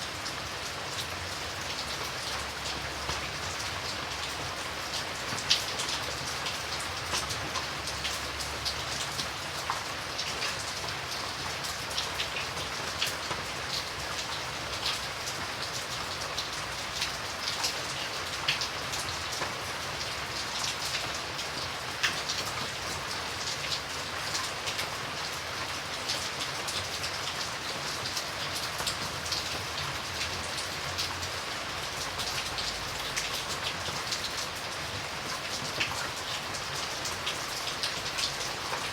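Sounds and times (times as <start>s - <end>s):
rain pattering: 0.0s - 38.9s.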